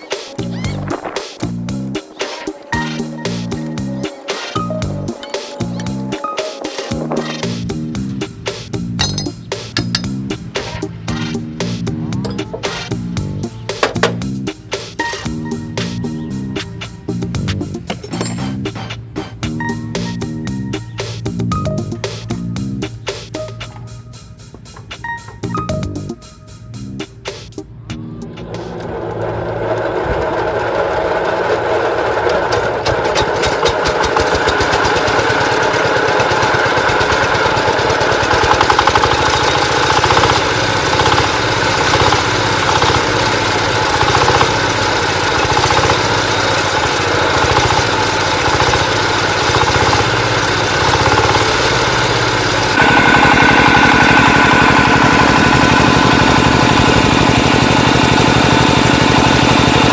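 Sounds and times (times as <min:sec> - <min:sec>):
diesel engine knocking: 0:06.9 - 0:23.0, 0:28.4 - 0:59.9.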